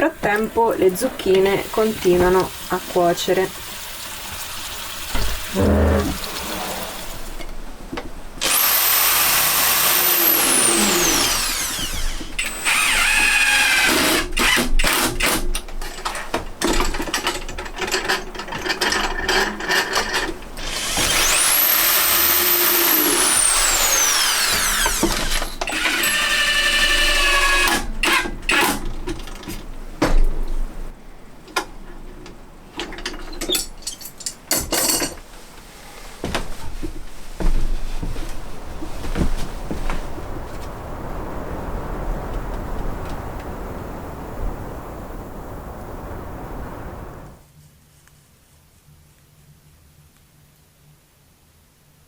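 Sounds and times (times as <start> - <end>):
electric power tool whine: 8.4 - 15.4, 20.6 - 28.6.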